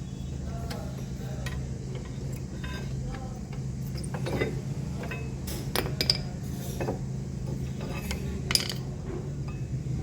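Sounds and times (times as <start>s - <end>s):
steady low hum: 0.0s - 10.0s
metal tools clinking: 7.8s - 8.9s.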